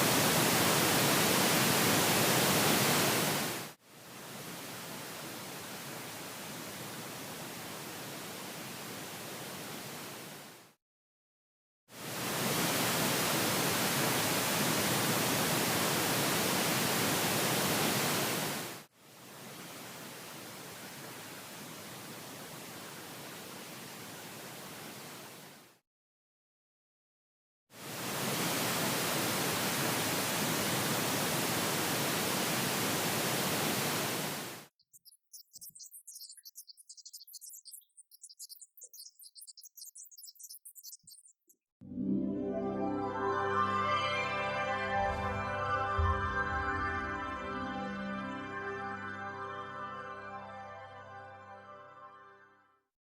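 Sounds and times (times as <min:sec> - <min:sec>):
pink noise test signal hiss: 0:00.0 - 0:10.6, 0:12.0 - 0:25.7, 0:27.8 - 0:34.7.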